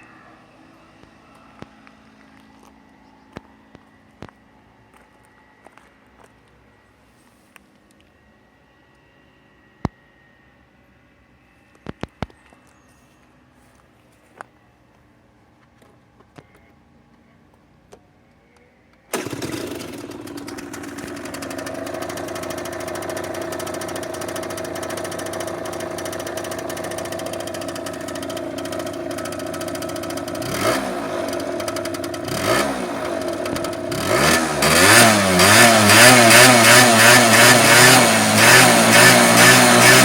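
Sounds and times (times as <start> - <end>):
scooter engine idling and revving: 19.1 - 40.0.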